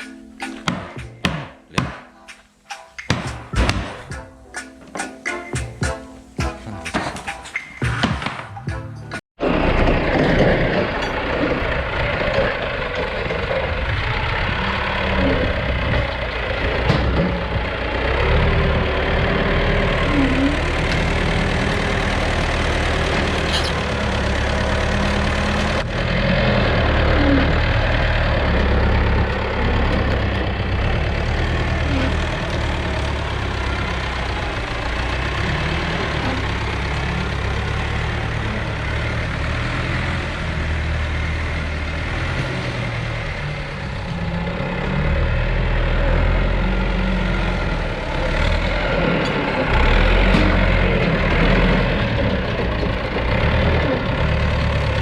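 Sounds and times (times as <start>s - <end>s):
woodworking machinery running: 9.4s - 55.0s.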